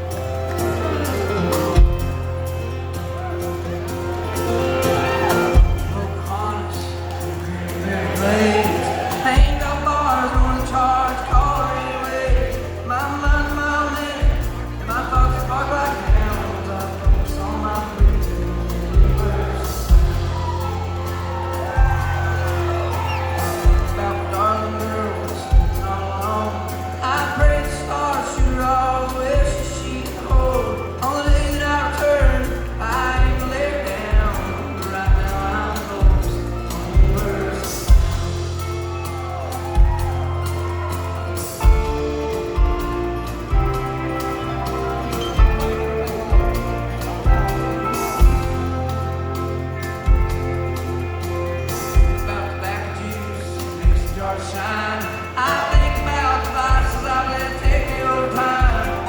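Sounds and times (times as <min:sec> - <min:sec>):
live country band playing: 0:00.0 - 0:59.0
person singing: 0:00.0 - 0:59.0
kick drum and bass beat: 0:01.8 - 0:02.4, 0:05.6 - 0:06.1, 0:09.2 - 0:24.4, 0:25.5 - 0:49.2, 0:50.1 - 0:50.9, 0:51.8 - 0:52.4, 0:53.8 - 0:54.4, 0:55.7 - 0:59.0.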